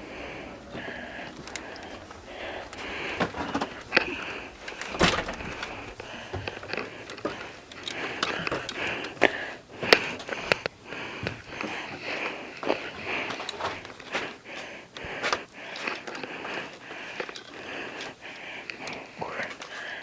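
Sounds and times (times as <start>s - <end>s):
knocks and clicks in room: 0.0s - 14.3s
breathy noise near microphone: 0.0s - 20.0s.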